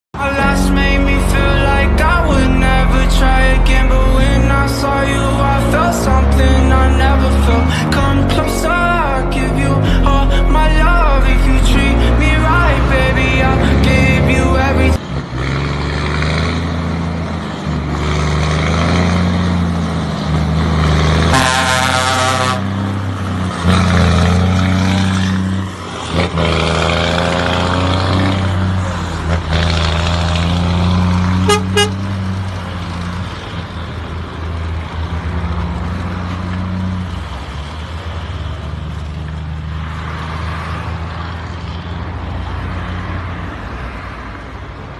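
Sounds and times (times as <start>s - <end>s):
truck diesel engine rumbling: 0.2s - 43.8s
truck horn: 21.1s - 25.3s, 31.3s - 32.2s.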